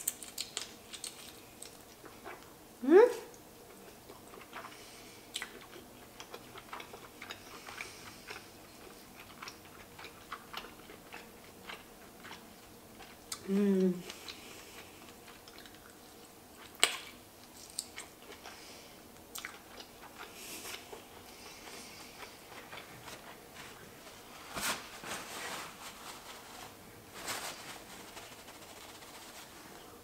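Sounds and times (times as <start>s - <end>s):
chewing: 3.3s - 24.0s.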